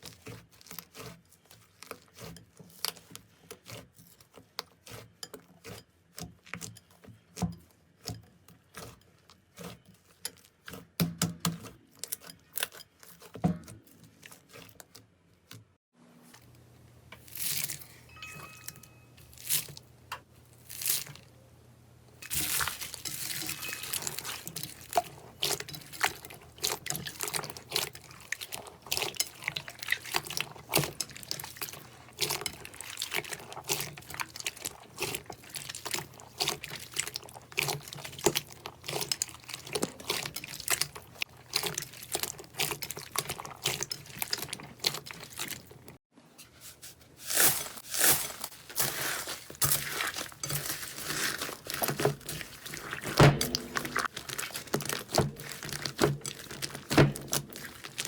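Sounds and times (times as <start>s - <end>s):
slime popping and crackling: 47.4s - 58.0s.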